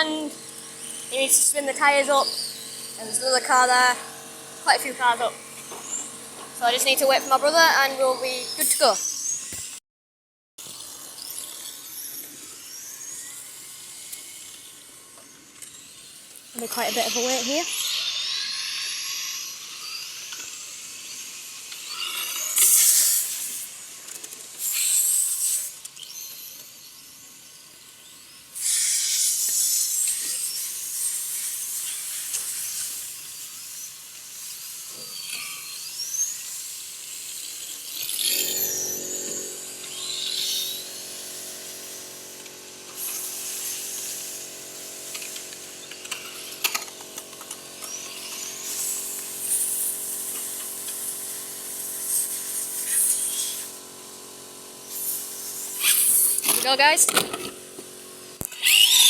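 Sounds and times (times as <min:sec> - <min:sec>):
steady humming drone: 0:00.0 - 0:09.1, 0:37.7 - 0:59.0
remote-control car motors whining: 0:00.0 - 0:09.8, 0:10.6 - 0:59.0.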